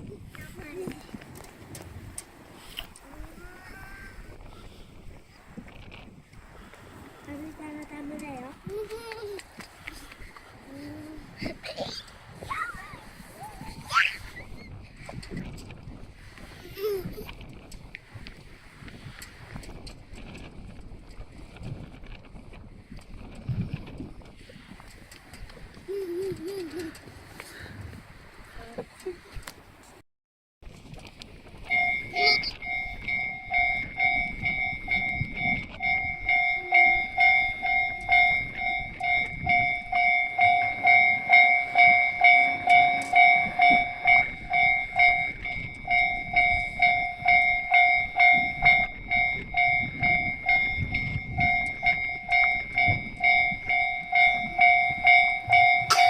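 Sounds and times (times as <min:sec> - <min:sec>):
level crossing bell clanging: 0:31.7 - 0:56.0.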